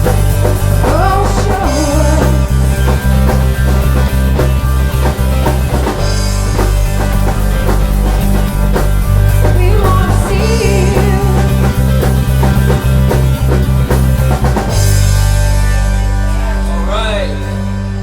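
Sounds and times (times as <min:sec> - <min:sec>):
drum kit beat: 0:00.0 - 0:18.0
rock band playing: 0:00.0 - 0:18.0
person singing: 0:00.8 - 0:02.6, 0:09.5 - 0:11.8.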